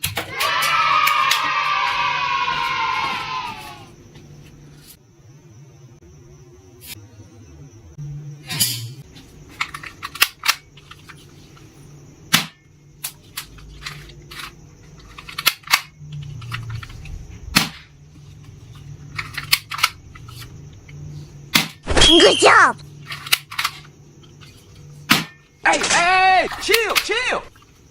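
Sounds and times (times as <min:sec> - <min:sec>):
toy guns firing: 0:25.1 - 0:27.4.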